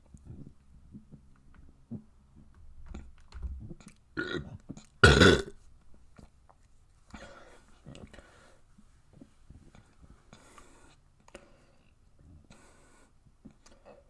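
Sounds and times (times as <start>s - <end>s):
person burping: 4.2s - 5.6s.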